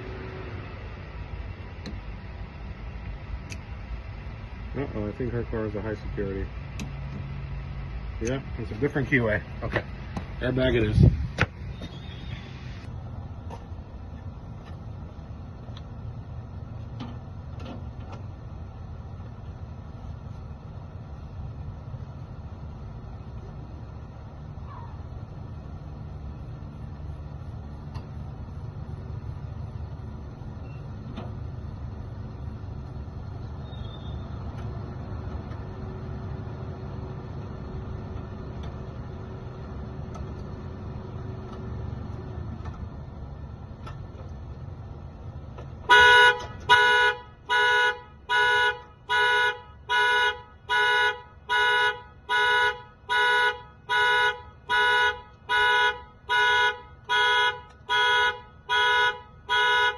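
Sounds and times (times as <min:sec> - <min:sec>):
low steady rumble: 0:00.0 - 0:59.9
car horn honking: 0:45.8 - 0:59.9.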